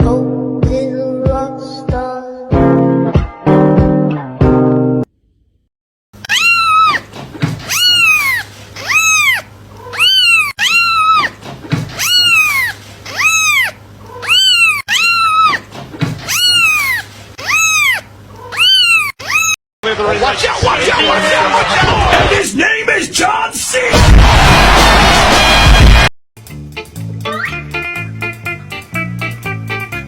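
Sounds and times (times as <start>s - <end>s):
cat meowing: 6.2s - 11.4s, 12.0s - 19.6s.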